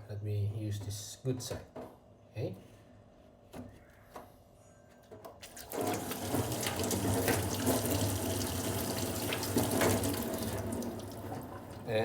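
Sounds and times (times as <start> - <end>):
water running from a tap: 5.5 - 12.0.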